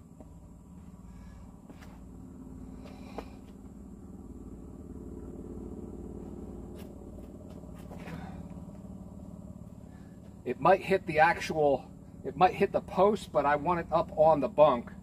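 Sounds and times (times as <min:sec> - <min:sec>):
motor humming: 0:00.0 - 0:10.5.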